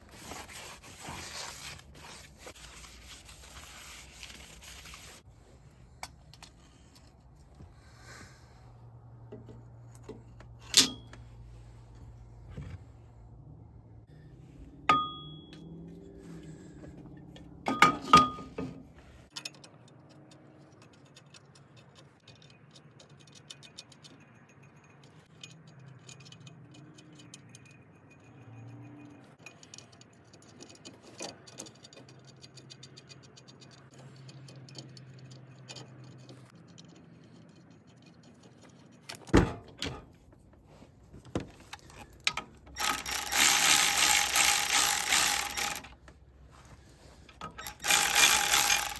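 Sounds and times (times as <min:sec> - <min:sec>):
metal tools clinking: 0:09.9 - 0:11.4, 0:41.6 - 0:46.0, 0:47.2 - 0:48.9.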